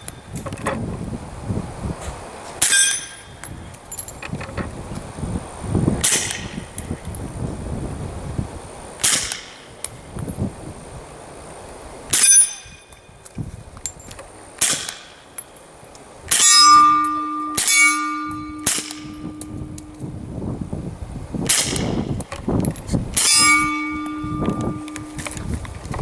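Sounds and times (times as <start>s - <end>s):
steel target ringing: 2.6s - 3.4s, 12.1s - 12.9s, 16.3s - 20.4s, 23.2s - 25.6s.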